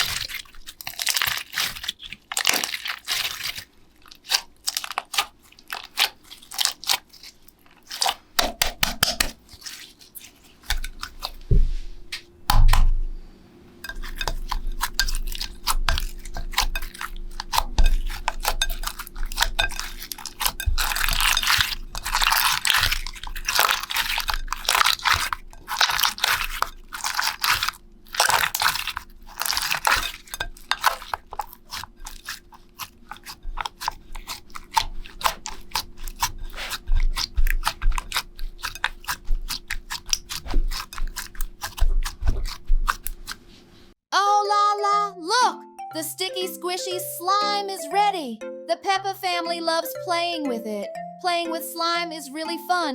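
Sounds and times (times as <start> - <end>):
slime crunching and crackling: 0.0 - 11.4, 13.9 - 43.5.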